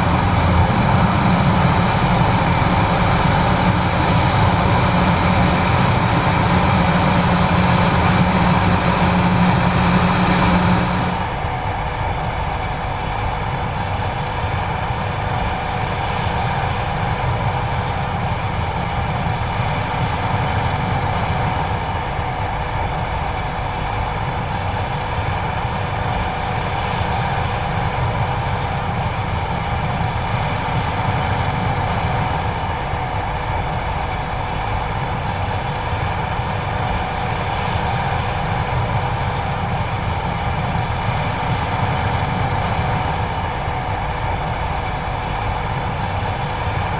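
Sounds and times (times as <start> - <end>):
machine whining tones: 0.0 - 11.6
combine harvester engine drone: 0.0 - 46.9.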